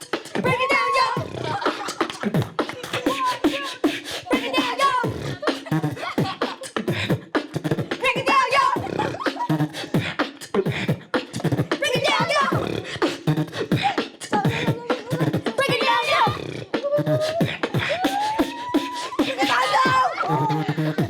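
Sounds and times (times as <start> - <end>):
person beatboxing: 0.0 - 21.0.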